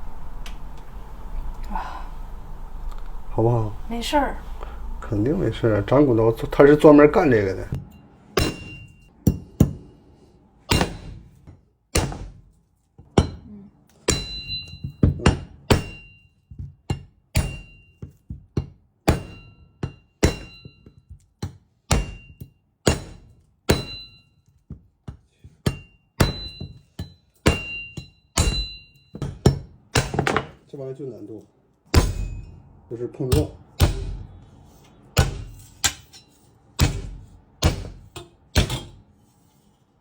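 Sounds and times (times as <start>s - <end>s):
blade ringing metallic tone: 14.1s - 14.9s, 32.0s - 32.6s
cleaver chopping bone: 33.4s - 34.3s, 35.2s - 35.5s.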